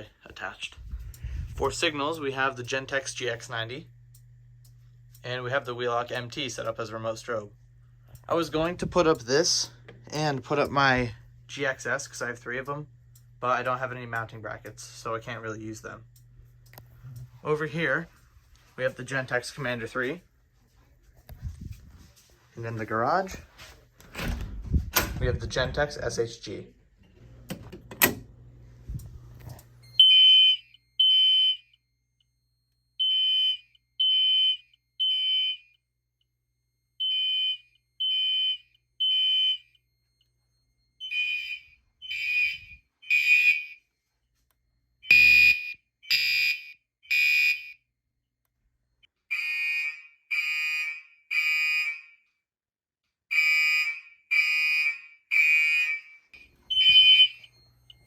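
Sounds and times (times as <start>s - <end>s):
fire alarm horn beeping: 29.9s - 31.9s, 32.9s - 35.8s, 36.9s - 47.9s, 49.2s - 52.4s, 53.3s - 58.0s.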